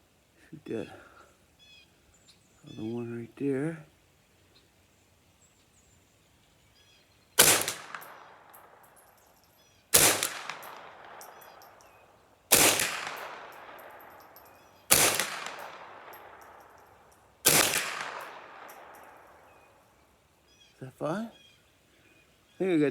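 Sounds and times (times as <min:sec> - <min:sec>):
rifle shots with echo: 0:07.4 - 0:09.0, 0:09.9 - 0:19.6.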